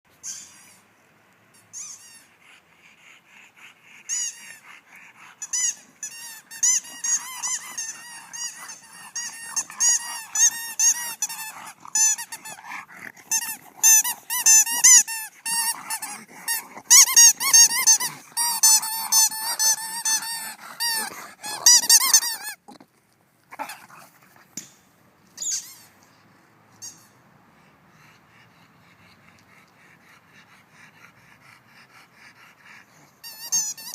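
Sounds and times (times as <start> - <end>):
squeaky dog toy squeaking: 1.7 - 2.3, 4.1 - 4.6, 5.4 - 12.6, 13.3 - 22.6, 25.4 - 25.9, 26.8 - 27.2, 33.2 - 33.9.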